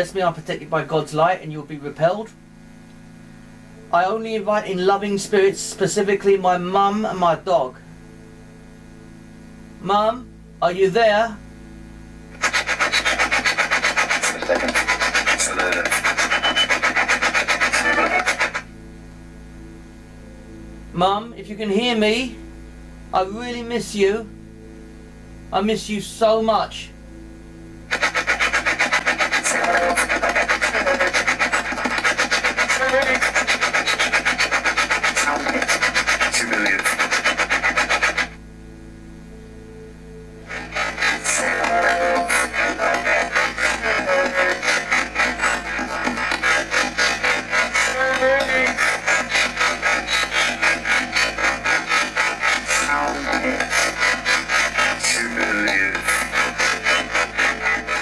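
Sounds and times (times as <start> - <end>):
quiet hum: 0.0 - 58.0
rapidly chopped radio hiss: 0.0 - 58.0
garbled broadcast voices: 12.4 - 18.7, 27.9 - 38.4, 40.5 - 58.0.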